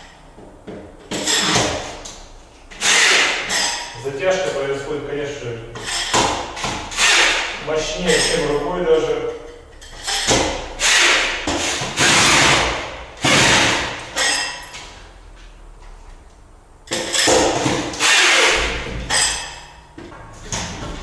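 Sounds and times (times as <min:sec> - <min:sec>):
power drill tightening bolts: 0:02.7 - 0:03.8, 0:05.8 - 0:08.4, 0:09.8 - 0:12.5, 0:17.1 - 0:19.5.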